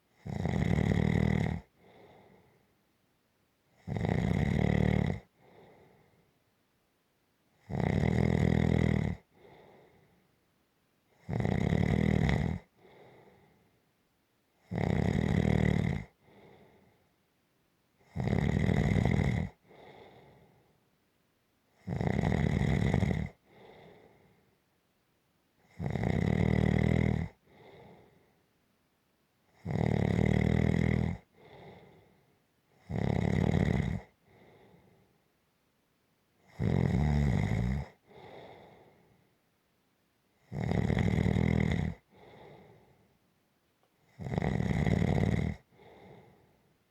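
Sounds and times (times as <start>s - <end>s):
loud snoring: 0.2s - 2.2s, 3.8s - 5.7s, 7.6s - 9.6s, 11.2s - 13.2s, 14.6s - 16.6s, 18.0s - 20.4s, 21.8s - 24.0s, 25.7s - 28.0s, 29.6s - 32.0s, 32.8s - 34.6s, 36.5s - 38.7s, 40.4s - 42.8s, 44.1s - 46.4s
faint breath: 1.7s - 2.9s, 5.3s - 6.4s, 9.3s - 10.4s, 12.7s - 14.0s, 16.2s - 17.2s, 19.6s - 20.9s, 23.4s - 24.7s, 27.4s - 28.5s, 31.2s - 32.4s, 34.1s - 35.3s, 37.9s - 39.4s, 42.0s - 43.2s, 45.6s - 46.9s.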